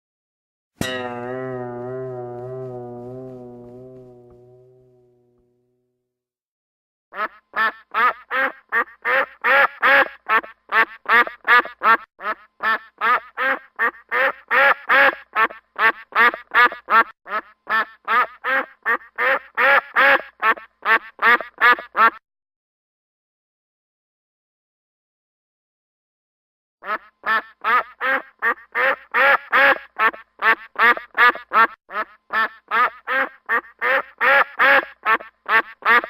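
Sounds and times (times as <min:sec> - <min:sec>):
duck quacking: 0:07.1 - 0:22.2, 0:26.8 - 0:36.0.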